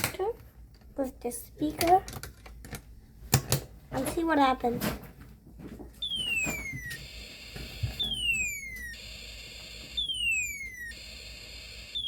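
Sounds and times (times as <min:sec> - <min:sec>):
electronic tone falling in pitch: 0:06.0 - 0:12.0
steady high electronic tone: 0:06.0 - 0:12.0.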